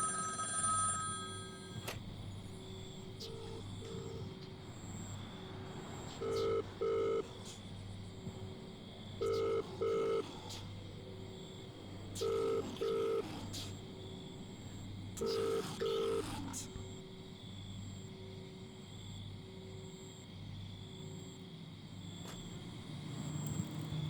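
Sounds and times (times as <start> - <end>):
telephone ringing beeps: 0.0 - 2.0, 6.2 - 7.2, 12.2 - 13.2, 15.2 - 16.2
steady low hum: 0.9 - 24.0.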